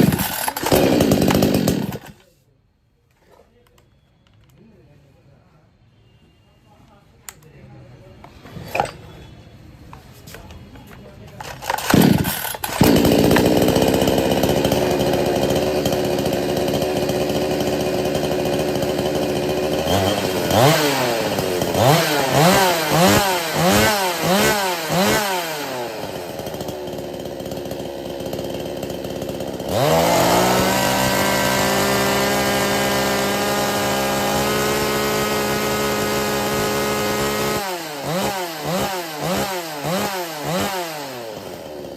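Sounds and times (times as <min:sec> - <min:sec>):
chainsaw starting and revving: 0:00.0 - 0:02.3, 0:11.4 - 0:41.9.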